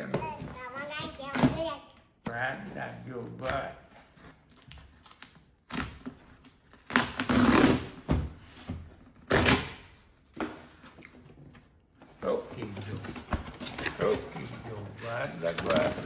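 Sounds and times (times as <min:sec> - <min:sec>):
packaging rustling and tearing: 0:12.2 - 0:16.0.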